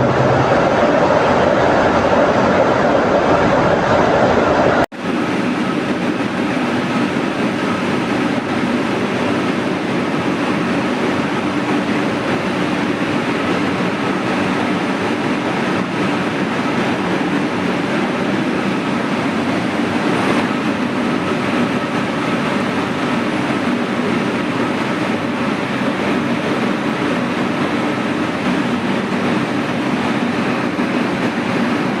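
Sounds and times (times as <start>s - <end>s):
low hum: 0.0s - 4.9s.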